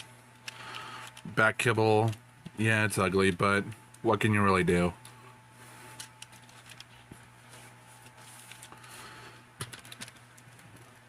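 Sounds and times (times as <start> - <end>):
steady low hum: 0.0 - 11.0
plastic toy clicking and rustling: 9.6 - 10.9.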